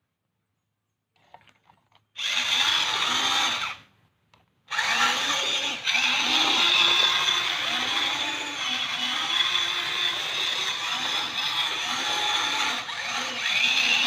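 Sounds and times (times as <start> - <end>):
power tool whirring: 2.2 - 3.8, 4.7 - 14.0.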